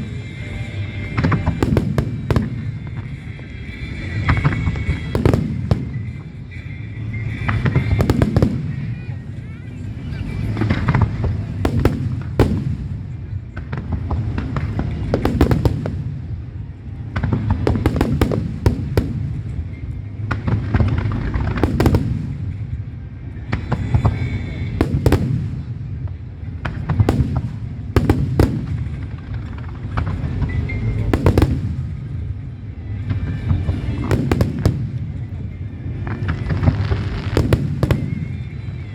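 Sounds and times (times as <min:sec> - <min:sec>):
fireworks bangs and crackles: 0:00.0 - 0:38.9.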